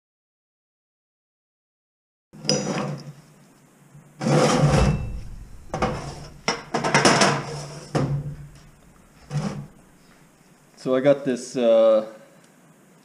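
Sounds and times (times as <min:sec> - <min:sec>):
metal parts clunking and scraping: 0:04.2 - 0:10.2.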